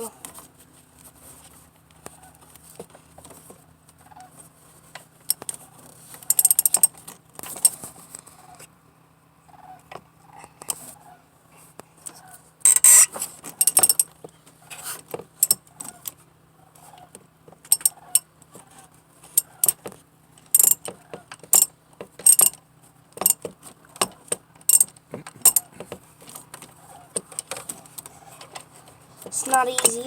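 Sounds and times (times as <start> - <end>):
ratchet clicking: 20.6 - 20.9, 24.7 - 24.9.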